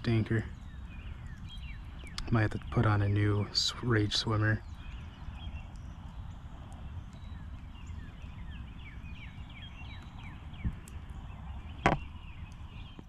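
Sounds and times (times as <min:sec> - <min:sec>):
bird chirping: 0:00.0 - 0:13.0
low outdoor rumble: 0:00.0 - 0:13.0
low thump: 0:11.8 - 0:12.1.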